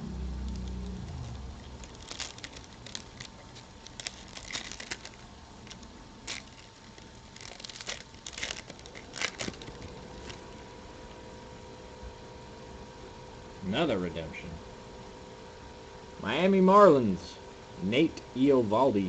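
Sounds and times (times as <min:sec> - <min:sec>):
cards and plastic packaging rustling: 0:00.4 - 0:10.6.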